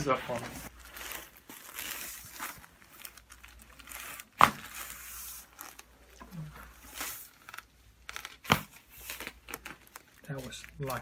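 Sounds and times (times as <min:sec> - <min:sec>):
paper crinkling and rustling: 0:00.0 - 0:11.0
sharp paper snap: 0:04.3 - 0:05.0, 0:07.0 - 0:09.7.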